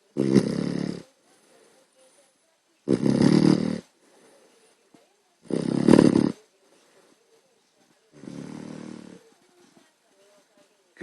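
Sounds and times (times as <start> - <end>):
puppy snoring: 0.0 - 1.2, 2.8 - 4.0, 5.4 - 6.5, 8.1 - 9.4
faint breathing: 1.0 - 2.6, 3.8 - 5.2, 6.3 - 10.7.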